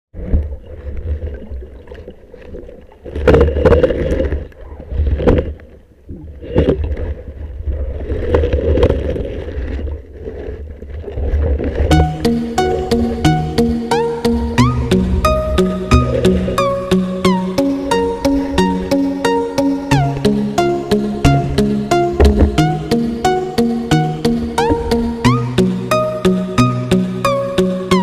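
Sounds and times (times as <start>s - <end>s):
water sloshing and gurgling: 0.2s - 25.4s
music: 11.9s - 28.0s.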